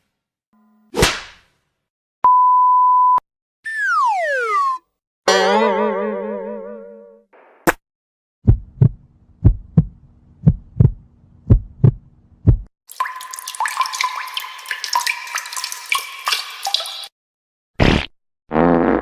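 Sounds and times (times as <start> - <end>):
heartbeat double thumps: 8.4 - 12.7.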